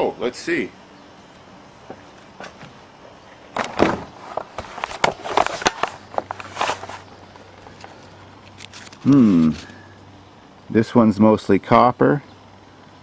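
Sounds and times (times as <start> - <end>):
clicks and rustles of handling: 3.5 - 9.8.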